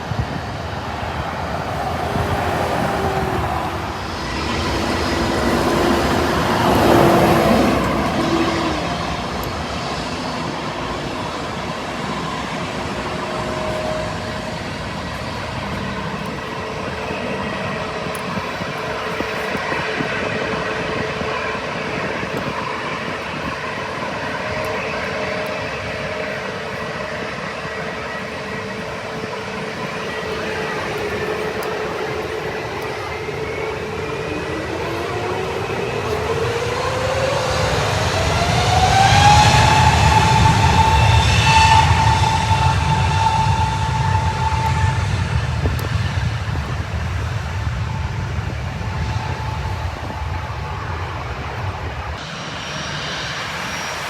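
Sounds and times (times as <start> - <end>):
jet engines running: 0.0 - 54.0.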